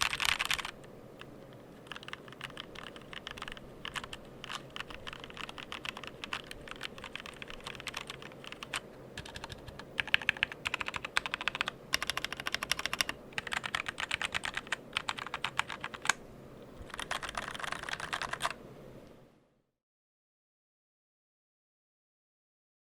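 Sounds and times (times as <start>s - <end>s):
mechanical keyboard typing: 0.0s - 16.2s, 16.8s - 18.6s.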